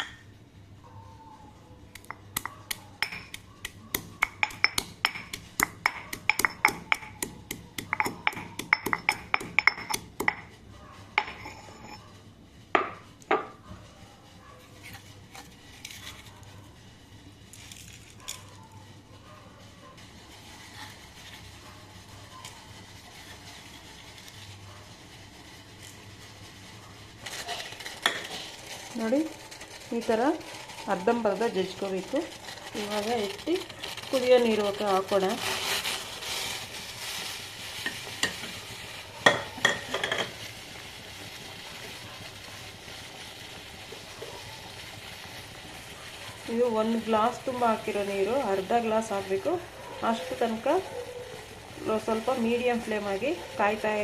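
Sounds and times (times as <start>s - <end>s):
seeds being pounded: 2.0s - 10.5s.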